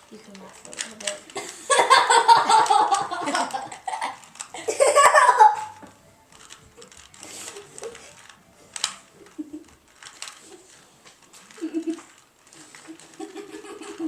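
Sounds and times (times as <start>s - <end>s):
people laughing: 1.4s - 5.8s, 12.9s - 14.0s.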